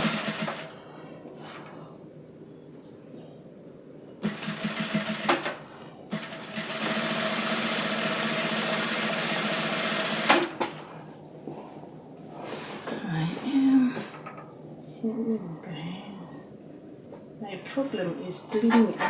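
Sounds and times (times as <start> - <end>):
sewing machine stitching: 0.0 - 0.7, 4.2 - 10.6.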